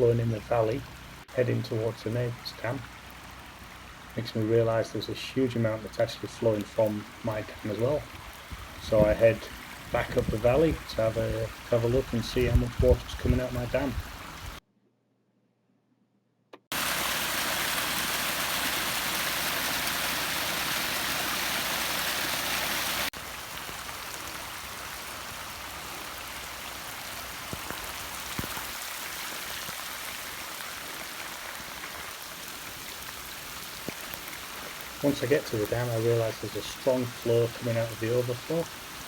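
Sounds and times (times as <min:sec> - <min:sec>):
faint water drips: 0:00.0 - 0:14.6, 0:23.3 - 0:39.0
rain falling: 0:00.0 - 0:14.6, 0:16.7 - 0:39.0
rain runoff water rushing: 0:00.0 - 0:14.6, 0:16.7 - 0:39.0.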